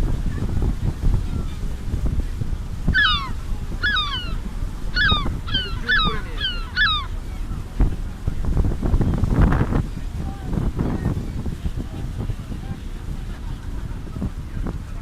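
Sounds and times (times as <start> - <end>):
boat noise: 0.0 - 15.0
low rumble of wind: 0.0 - 15.0
seagulls calling: 2.8 - 7.7.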